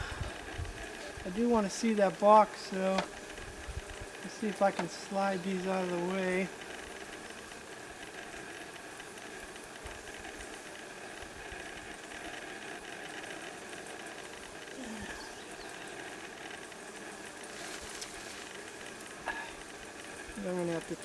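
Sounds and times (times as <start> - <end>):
honey bees humming: 0.0 - 21.0
falling buzz: 14.6 - 21.0.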